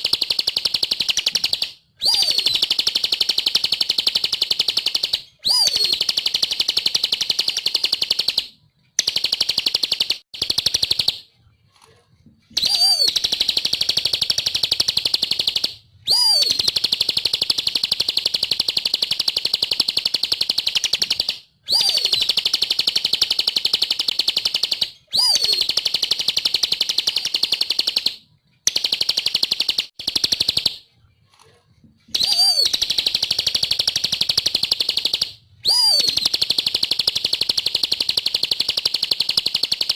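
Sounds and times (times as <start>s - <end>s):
bird singing high trills: 1.2s - 2.8s, 4.9s - 8.0s, 12.6s - 17.4s, 20.8s - 22.5s, 25.1s - 25.8s, 32.2s - 36.8s.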